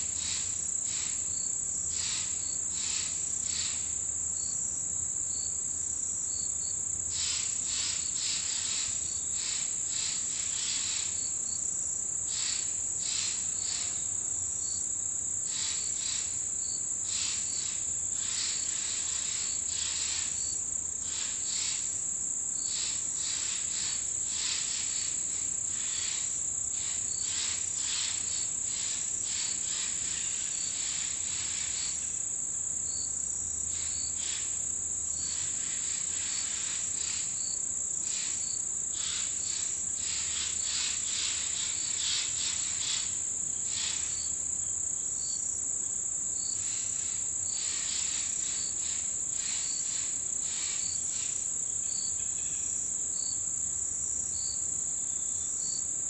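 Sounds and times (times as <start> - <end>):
pulsing insect calls: 0.0 - 4.5, 12.3 - 14.8, 15.4 - 32.2, 32.8 - 45.4
high-pitched insect trill: 0.0 - 56.0.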